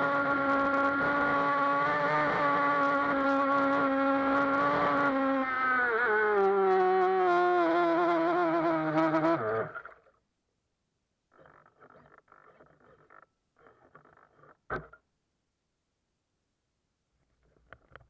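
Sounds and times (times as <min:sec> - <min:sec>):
electric motor whining: 0:00.0 - 0:09.7.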